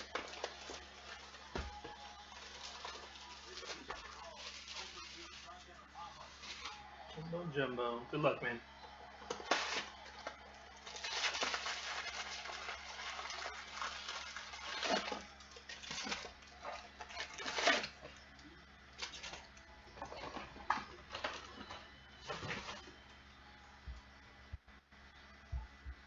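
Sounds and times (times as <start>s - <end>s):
packaging rustling and crinkling: 0.0s - 6.8s, 9.3s - 18.2s, 19.0s - 23.0s.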